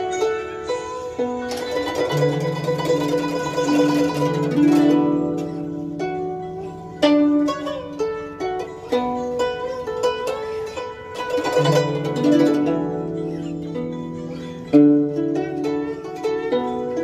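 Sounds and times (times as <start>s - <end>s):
zither plucked melody: 0.0s - 17.0s.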